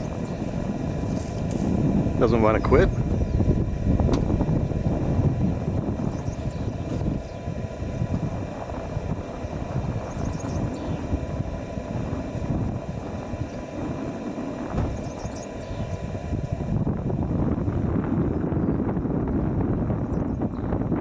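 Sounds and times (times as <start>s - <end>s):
wind buffeting microphone: 0.0s - 21.0s
faint high bird chirps: 15.0s - 16.0s.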